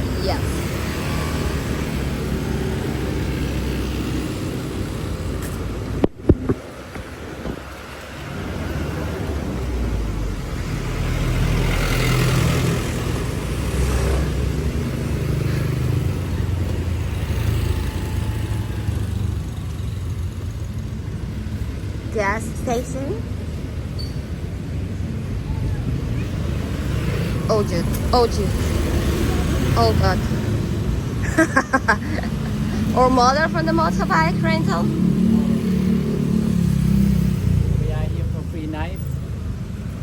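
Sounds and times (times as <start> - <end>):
road traffic: 0.0 - 40.0.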